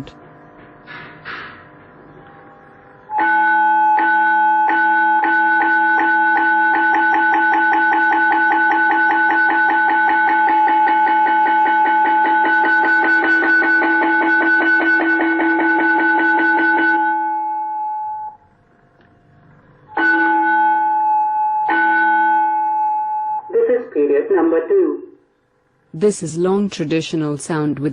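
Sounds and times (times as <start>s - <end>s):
electric school bell ringing: 2.1s - 18.4s, 19.9s - 23.5s.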